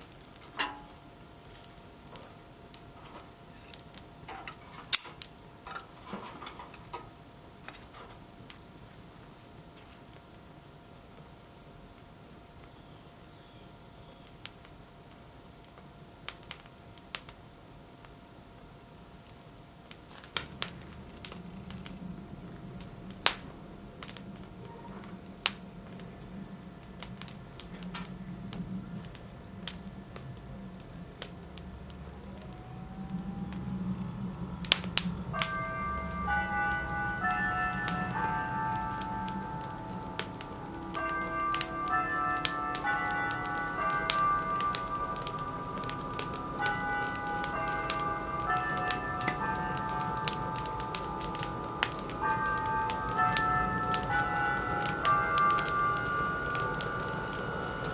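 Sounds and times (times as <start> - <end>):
low steady hum: 0.0 - 57.9
wood fire crackling: 0.0 - 57.9
sharp pops from burning wood: 0.1 - 7.0.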